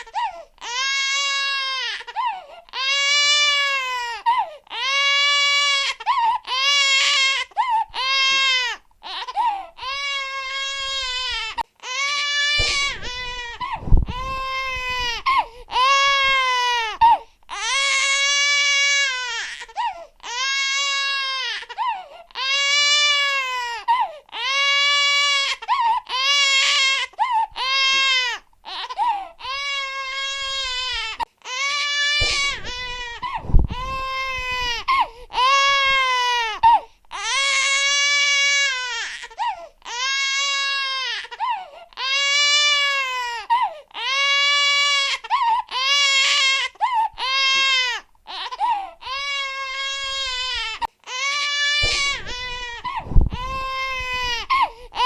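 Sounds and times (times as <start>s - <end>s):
infant crying: 0.0s - 55.0s
sharp low thumps: 12.6s - 15.3s, 32.2s - 35.0s, 51.8s - 54.6s.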